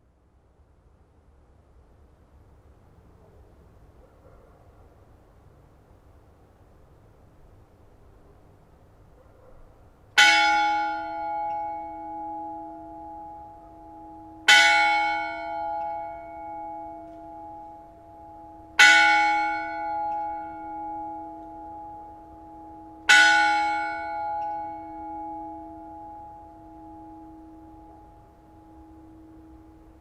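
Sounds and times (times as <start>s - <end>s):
church bell striking: 10.2s - 30.0s.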